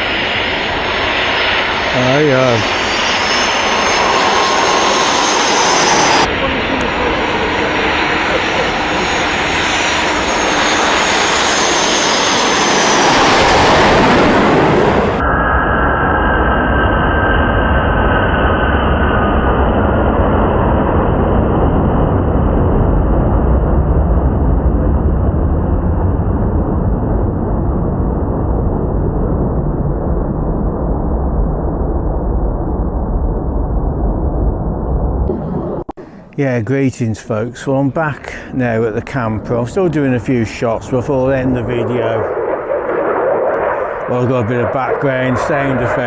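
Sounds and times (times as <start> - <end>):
steady dull rumble: 0.0 - 11.4, 22.0 - 46.0
jet aircraft flying past: 0.0 - 34.4, 35.3 - 46.0.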